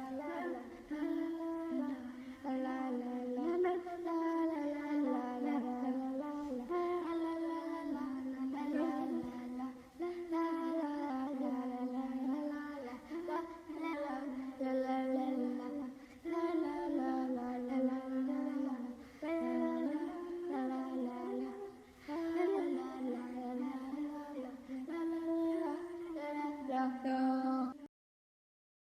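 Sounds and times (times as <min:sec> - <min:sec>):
person humming a tune: 0:08.6 - 0:09.3.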